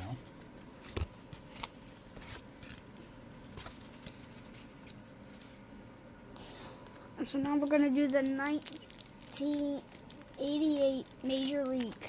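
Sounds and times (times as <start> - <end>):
cards slapping and rustling: 0.8 - 5.5.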